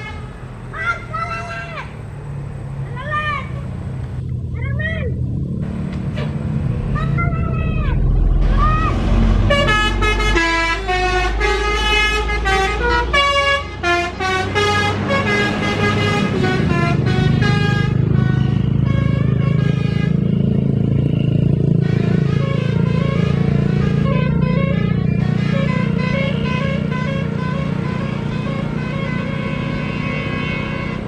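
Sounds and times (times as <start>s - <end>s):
bus engine droning: 0.0s - 31.0s
bus horn playing stepped notes: 6.1s - 20.4s, 21.7s - 31.0s.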